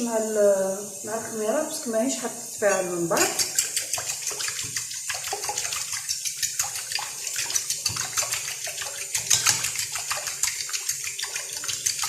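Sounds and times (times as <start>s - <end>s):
liquid sloshing: 3.1s - 12.0s
whisk clicking against bowl: 3.2s - 12.0s.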